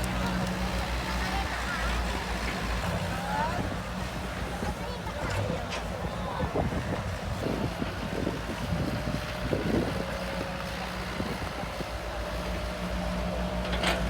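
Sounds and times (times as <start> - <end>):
wind buffeting microphone: 2.8 - 12.1.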